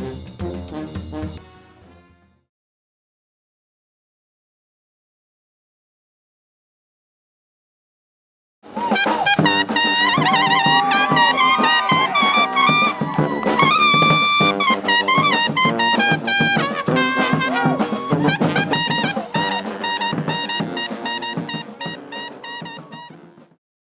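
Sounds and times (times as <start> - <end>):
brass band playing: 0.0 - 2.4, 8.7 - 23.6.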